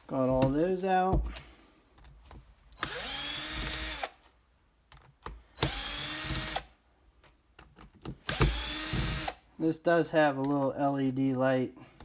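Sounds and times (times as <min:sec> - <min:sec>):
cordless power driver running: 0:02.8 - 0:04.1, 0:08.3 - 0:09.4.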